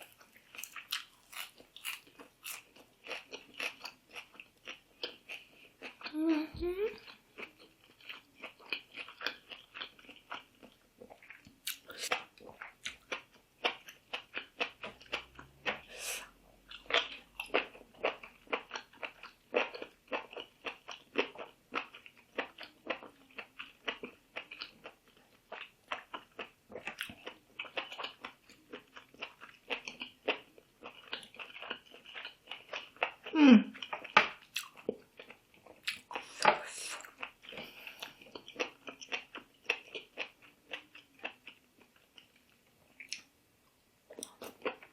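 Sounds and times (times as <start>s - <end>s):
person chewing crunchy food: 0.0s - 6.2s, 6.9s - 43.3s, 44.1s - 44.9s.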